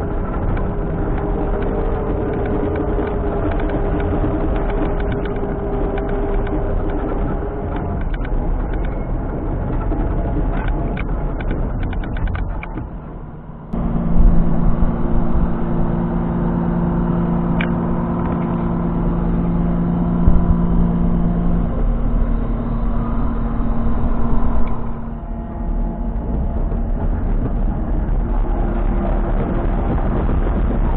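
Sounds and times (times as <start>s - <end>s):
scattered clicks: 0.0s - 13.8s, 17.5s - 25.2s
diesel engine running: 0.0s - 30.9s.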